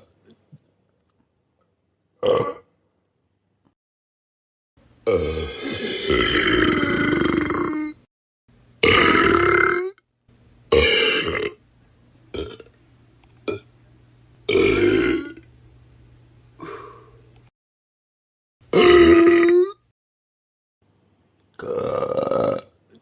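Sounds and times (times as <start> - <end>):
person burping: 2.2 - 2.7, 5.0 - 8.1, 8.8 - 10.0, 10.7 - 11.6, 14.5 - 15.4, 18.7 - 19.9, 21.6 - 23.0.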